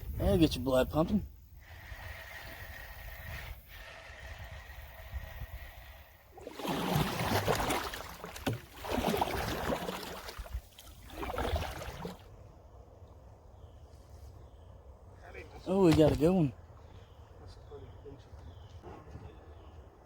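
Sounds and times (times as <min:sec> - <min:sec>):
rushing water from boat: 0:01.7 - 0:12.3.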